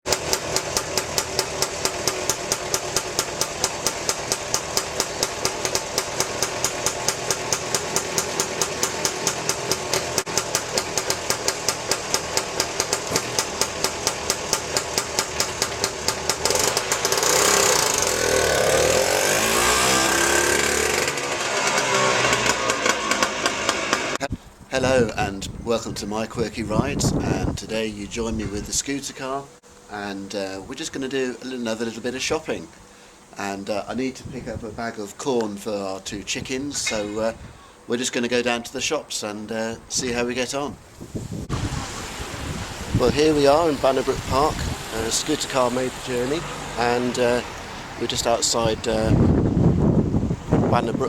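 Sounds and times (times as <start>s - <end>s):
small car engine running and revving: 0.0s - 24.2s.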